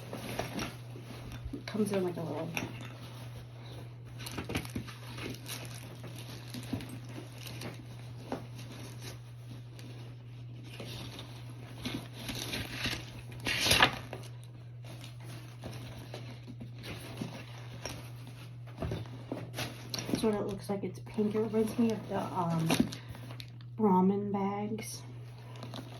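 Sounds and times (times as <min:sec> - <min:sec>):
packaging rustling and crinkling: 0:00.0 - 0:23.7, 0:25.2 - 0:25.9.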